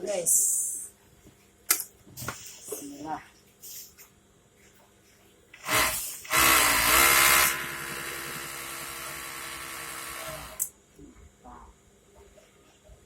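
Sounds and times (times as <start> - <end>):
machine motor spinning up: 5.7 - 10.6.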